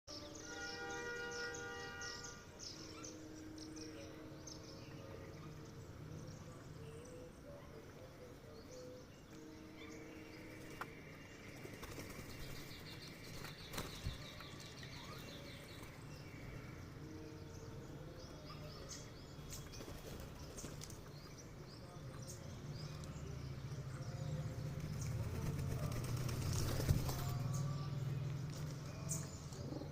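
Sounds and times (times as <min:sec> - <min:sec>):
birds chirping: 0:00.1 - 0:29.9
wings flapping: 0:11.6 - 0:14.2, 0:25.1 - 0:27.4.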